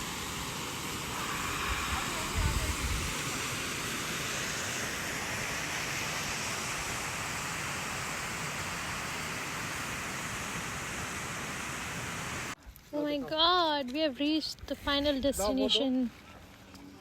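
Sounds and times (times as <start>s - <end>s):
running water rushing: 0.0s - 12.6s.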